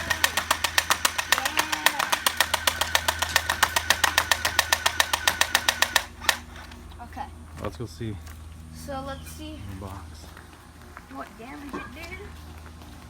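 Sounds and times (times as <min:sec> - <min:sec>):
airsoft gun firing full auto: 0:00.0 - 0:06.5.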